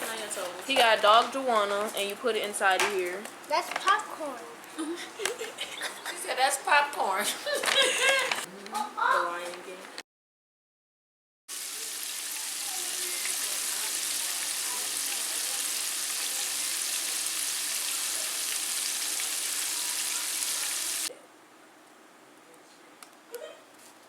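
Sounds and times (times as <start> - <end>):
steady hiss: 11.5 - 21.1.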